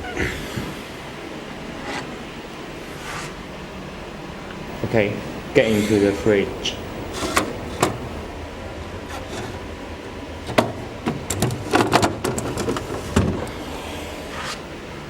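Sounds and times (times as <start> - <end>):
knocks and clatter: 10.4 - 13.5.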